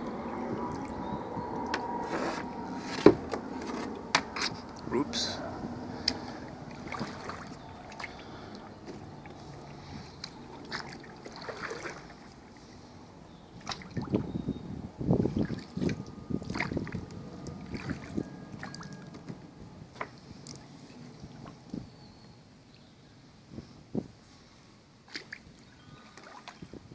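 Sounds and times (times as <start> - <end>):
kayak paddle splashing water: 0.0 - 13.0, 13.6 - 14.3, 15.3 - 19.0, 25.1 - 26.7.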